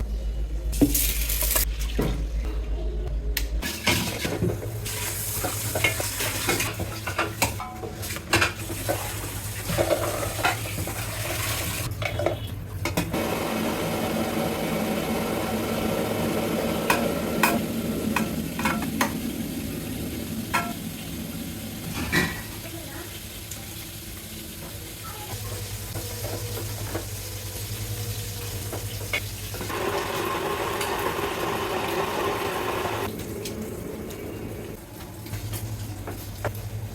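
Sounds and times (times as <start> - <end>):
food sizzling in a pan: 4.8 - 11.9, 13.2 - 33.2.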